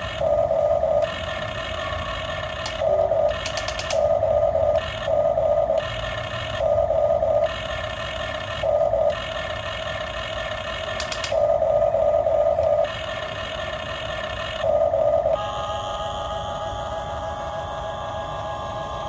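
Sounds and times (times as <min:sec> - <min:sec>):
toy electric motors whining: 0:00.0 - 0:19.0
quick clicks: 0:02.6 - 0:04.1, 0:10.8 - 0:11.5.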